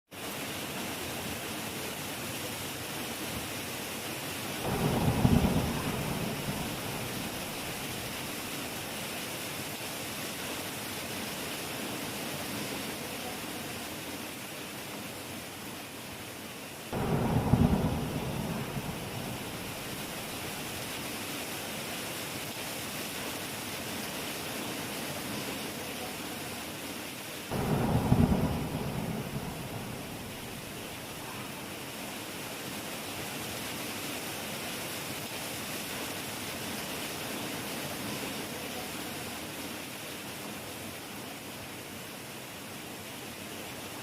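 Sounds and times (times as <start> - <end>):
heavy rain falling: 0.2 - 42.2
thunder rumbling low: 4.6 - 8.7, 17.0 - 21.0, 27.5 - 31.2.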